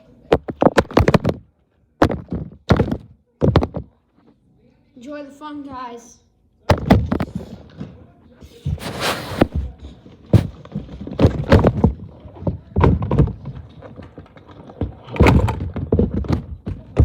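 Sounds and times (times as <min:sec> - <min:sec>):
toys thudding into a bin: 0:00.3 - 0:04.0, 0:06.7 - 0:07.8, 0:10.3 - 0:14.0, 0:15.1 - 0:17.0.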